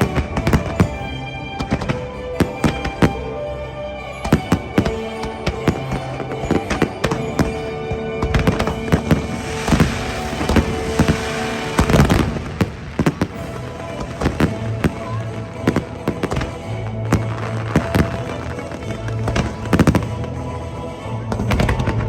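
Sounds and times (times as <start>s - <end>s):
fireworks crackling: 0.0s - 3.3s, 4.2s - 20.6s
show music: 0.0s - 21.6s
aerial fireworks banging: 4.2s - 20.3s.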